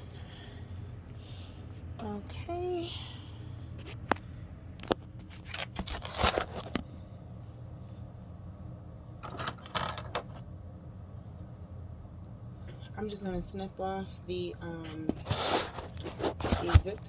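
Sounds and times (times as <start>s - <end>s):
rustling: 3.7s - 7.0s, 14.8s - 17.0s.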